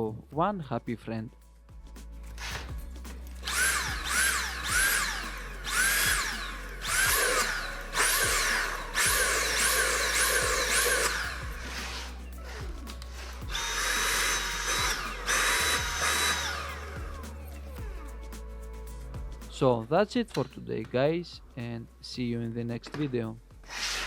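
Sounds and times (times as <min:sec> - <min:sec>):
vacuum motor whirring: 0:03.4 - 0:17.2.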